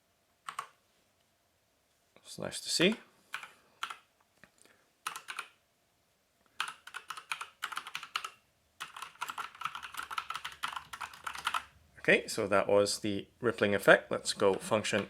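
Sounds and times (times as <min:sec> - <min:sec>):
typing on mechanical keyboard: 0:00.5 - 0:00.8, 0:03.3 - 0:04.1, 0:05.0 - 0:05.6, 0:06.6 - 0:11.7.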